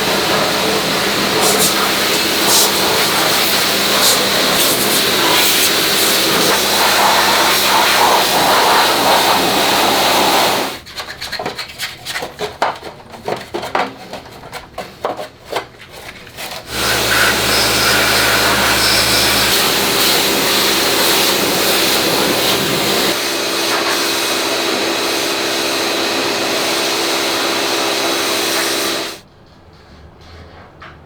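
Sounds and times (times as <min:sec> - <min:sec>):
pressure washer spraying: 0:00.0 - 0:10.8, 0:16.7 - 0:29.2
scrubbing strokes: 0:15.9 - 0:29.2.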